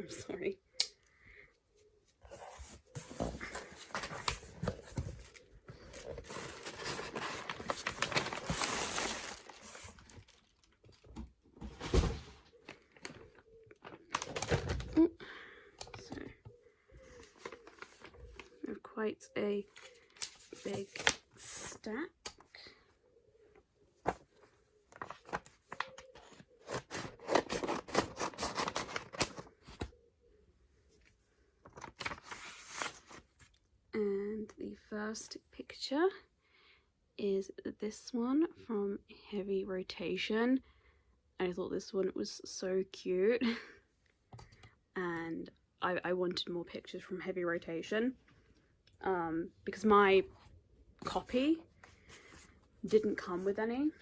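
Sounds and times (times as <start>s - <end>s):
packaging rustling and crinkling: 2.3s - 15.2s, 17.2s - 18.6s, 24.0s - 29.9s
items knocking and thumping: 11.0s - 12.5s.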